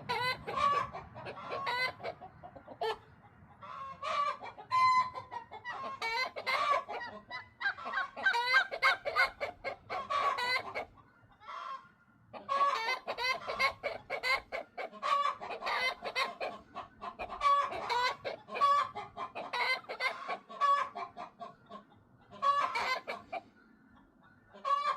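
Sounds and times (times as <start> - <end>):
hens clucking and cackling: 0.0 - 24.9.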